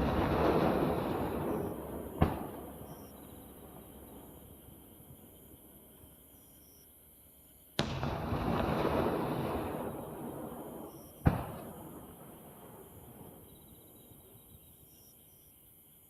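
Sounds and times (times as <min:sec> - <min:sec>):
fireworks bursting: 0:00.0 - 0:04.2, 0:07.8 - 0:13.3.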